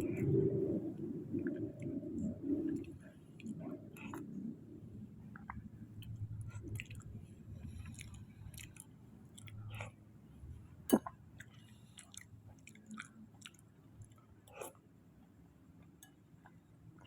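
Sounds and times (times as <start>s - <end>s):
person chewing soft food: 0.0s - 14.9s.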